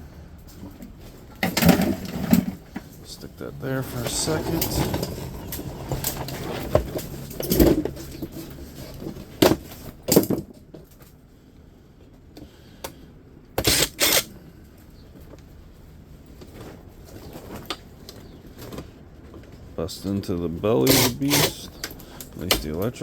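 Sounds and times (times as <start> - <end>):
appliance parts knocking and clattering: 1.3 - 3.0, 4.2 - 11.0.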